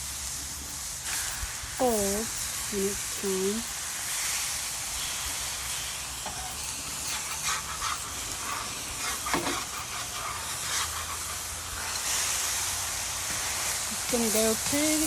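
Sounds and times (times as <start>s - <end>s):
chicken sizzling on a griddle: 0.0s - 15.0s.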